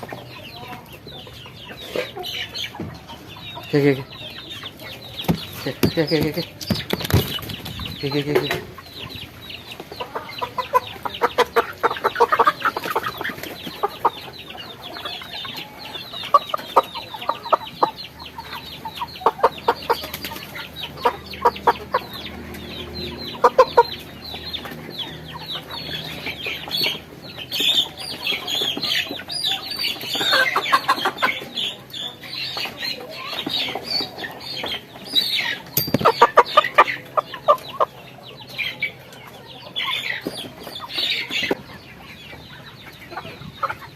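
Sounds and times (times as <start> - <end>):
chickens clucking and squawking: 0.0 - 43.9.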